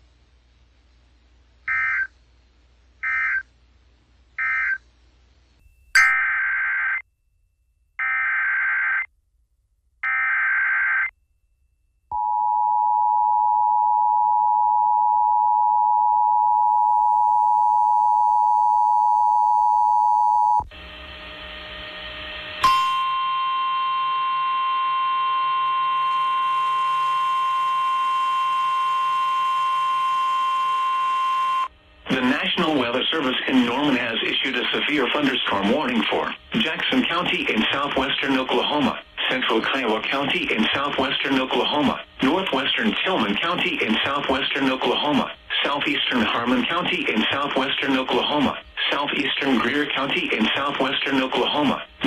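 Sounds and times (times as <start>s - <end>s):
steady alarm tone: 11.8s - 32.9s.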